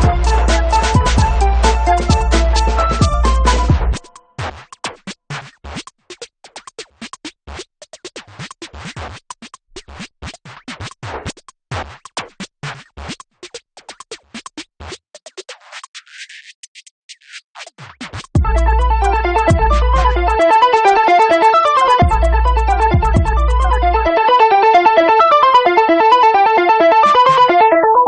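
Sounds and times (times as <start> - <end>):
percussive background music: 0.0 - 5.1, 17.8 - 26.2.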